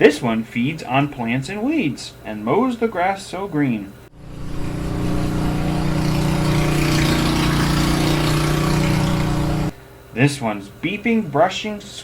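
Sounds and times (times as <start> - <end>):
lawn mower engine running: 4.1 - 9.7.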